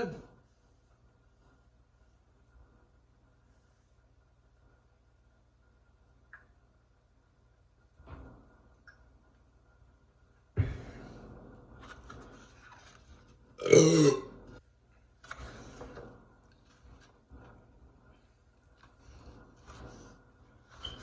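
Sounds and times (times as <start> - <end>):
person burping loudly: 13.6 - 14.6.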